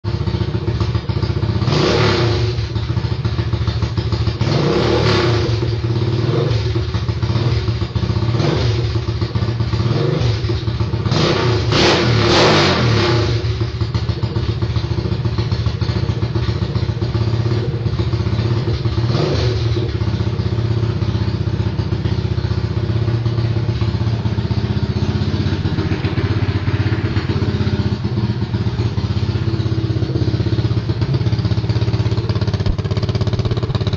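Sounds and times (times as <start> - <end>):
quad bike engine idling: 0.1 - 33.9
engine throttle blips: 21.7 - 33.9.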